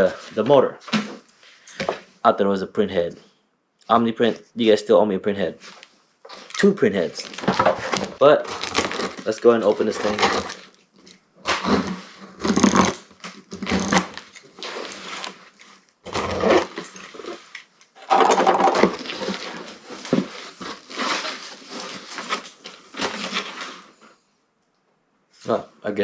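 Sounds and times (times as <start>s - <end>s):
cardboard and packing rustling: 5.6s - 24.2s
package tape ripping: 8.4s - 10.7s, 11.4s - 15.4s.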